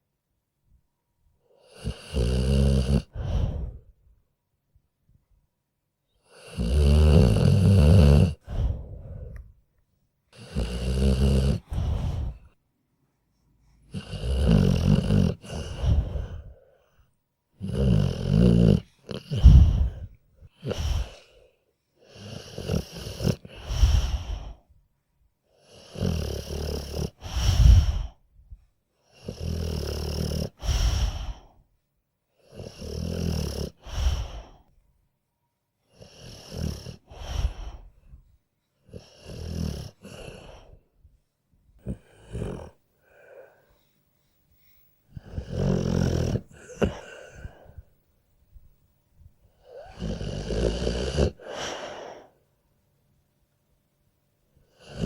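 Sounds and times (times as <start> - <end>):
dog snoring: 1.6 - 3.9, 6.2 - 9.5, 10.3 - 12.6, 13.8 - 16.8, 17.6 - 24.6, 25.6 - 28.2, 29.1 - 31.6, 32.4 - 34.7, 35.9 - 38.0, 38.8 - 40.8, 41.8 - 43.6, 45.1 - 47.9, 49.5 - 52.3, 54.6 - 55.0.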